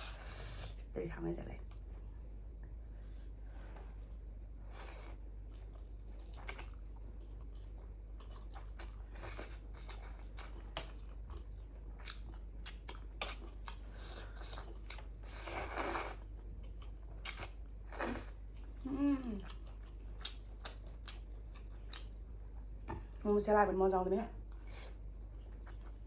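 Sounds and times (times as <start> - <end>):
person chewing dumplings: 4.0 - 23.2, 24.4 - 26.0.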